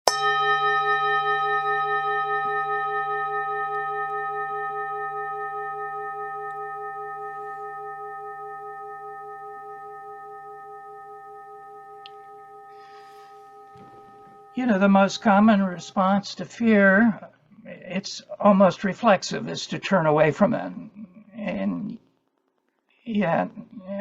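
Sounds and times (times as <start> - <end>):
singing bowl ringing: 0.1 - 16.2.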